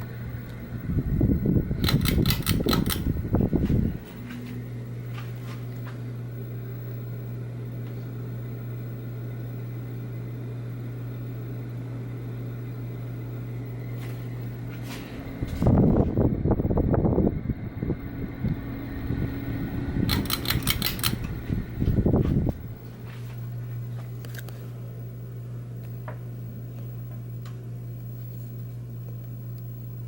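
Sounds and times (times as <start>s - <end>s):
fan clicking: 0.0s - 6.0s, 13.8s - 23.1s, 24.0s - 24.7s
ceiling fan rumbling: 0.0s - 30.0s
fan motor hum: 0.0s - 30.0s.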